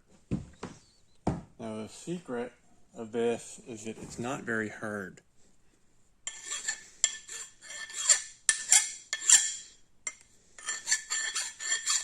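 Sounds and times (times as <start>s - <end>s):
file scraping steel: 6.3s - 12.0s.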